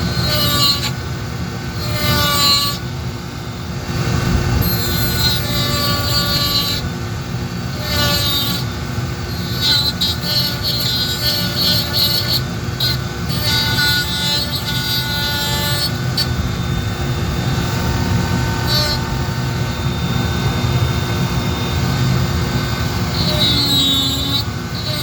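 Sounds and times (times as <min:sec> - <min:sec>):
rotary tool grinding wood: 0:00.0 - 0:01.0, 0:01.6 - 0:02.9, 0:04.0 - 0:25.0.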